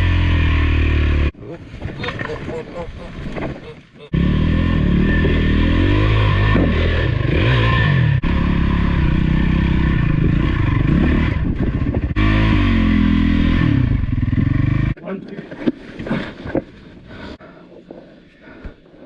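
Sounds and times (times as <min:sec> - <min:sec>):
dirt bike engine revving: 0:00.0 - 0:01.4, 0:04.1 - 0:15.0.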